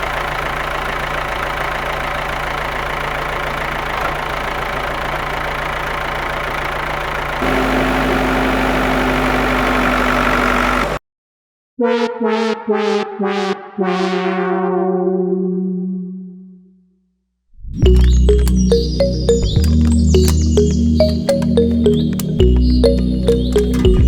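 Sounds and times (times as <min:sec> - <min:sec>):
tractor motor running: 0:00.0 - 0:11.0, 0:17.8 - 0:24.0.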